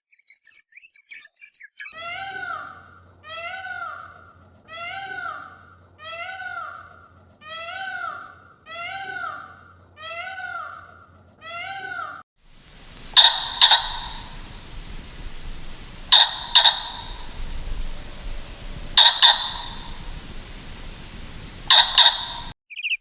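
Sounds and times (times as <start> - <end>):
high bird chirps: 12.6 - 23.0.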